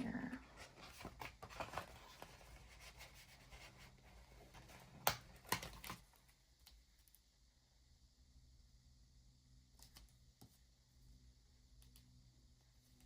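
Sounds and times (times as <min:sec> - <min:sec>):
paper rustling: 0:00.5 - 0:06.1.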